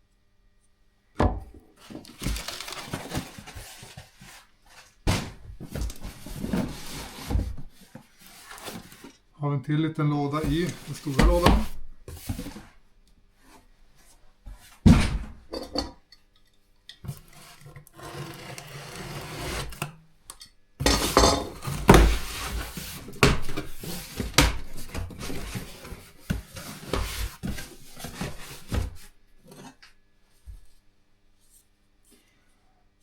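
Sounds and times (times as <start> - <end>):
cardboard and plastic rustling: 1.7 - 9.3, 10.3 - 12.8, 21.5 - 29.8.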